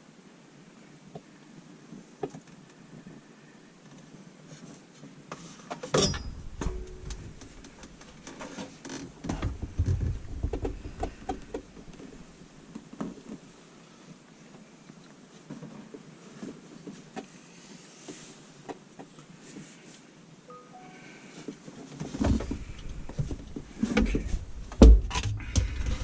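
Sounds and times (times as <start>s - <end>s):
clattering and low thumps: 6.1s - 8.4s, 9.2s - 12.3s.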